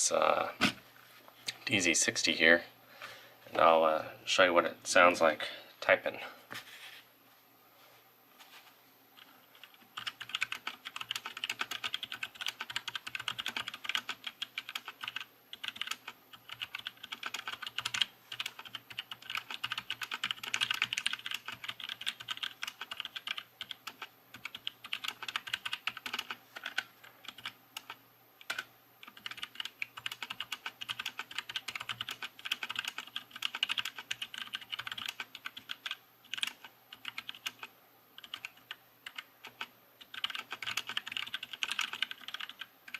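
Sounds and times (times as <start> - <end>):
fast mechanical keyboard typing: 9.2 - 42.9.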